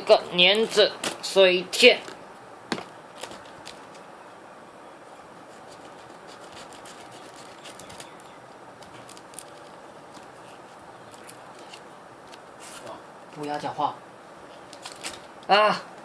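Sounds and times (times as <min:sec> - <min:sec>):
low hiss: 0:00.0 - 0:16.0
plastic parts and bags handled: 0:05.6 - 0:13.5, 0:14.6 - 0:15.5.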